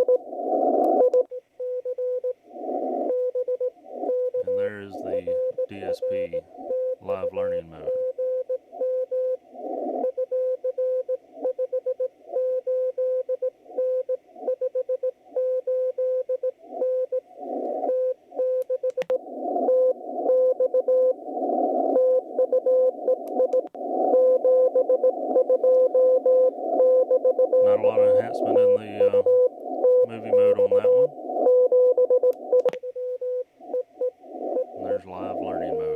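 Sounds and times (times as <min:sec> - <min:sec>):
morse code tone: 0:00.0 - 0:00.2, 0:03.1 - 0:09.4, 0:10.0 - 0:21.2, 0:21.8 - 0:35.9
atmospheric radio noise: 0:00.0 - 0:01.1, 0:03.8 - 0:08.0, 0:19.2 - 0:32.7, 0:33.6 - 0:35.9
static crack: 0:00.0 - 0:01.2, 0:03.9 - 0:08.0, 0:18.6 - 0:32.8, 0:33.6 - 0:35.9.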